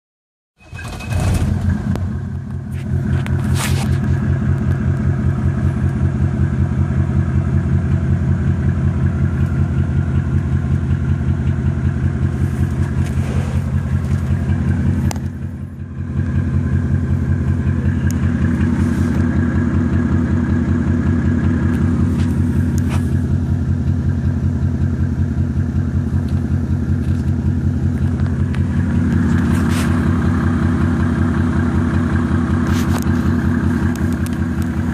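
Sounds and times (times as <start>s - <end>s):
diesel engine idling roughly: 0.6s - 34.9s.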